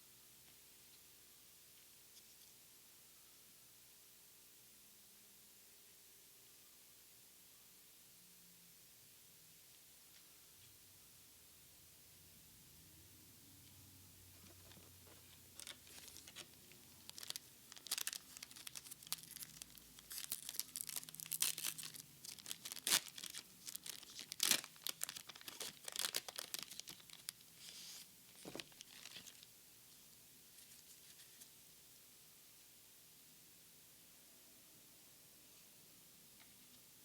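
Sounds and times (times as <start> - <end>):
foil wrapper tearing and crinkling: 15.5 - 27.4, 28.3 - 29.4.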